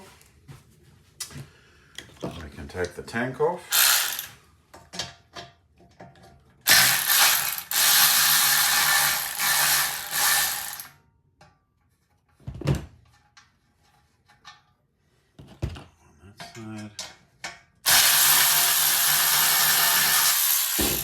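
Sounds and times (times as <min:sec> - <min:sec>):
ratchet wrench clicking: 0:03.7 - 0:04.4, 0:06.7 - 0:10.9.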